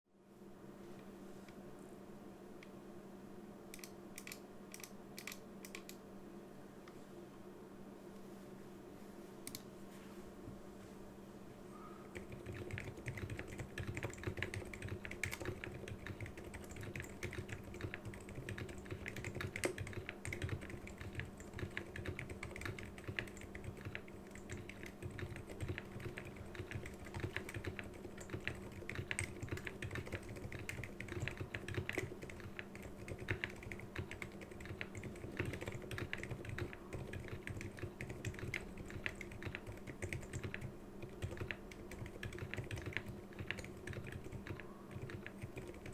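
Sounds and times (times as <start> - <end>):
computer fan humming: 0.2 - 45.9
mechanical keyboard typing: 3.8 - 6.0, 12.1 - 45.9.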